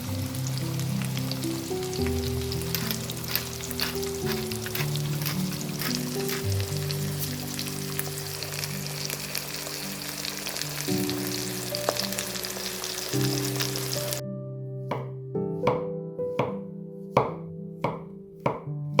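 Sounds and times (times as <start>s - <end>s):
food sizzling in hot oil: 0.0s - 14.2s
background music: 0.0s - 19.0s
knife chopping on board: 2.8s - 6.5s, 14.9s - 16.6s, 17.2s - 19.0s.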